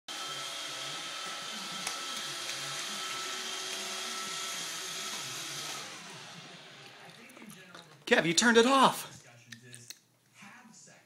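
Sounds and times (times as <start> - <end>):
robot vacuum whirring: 0.1 - 6.9.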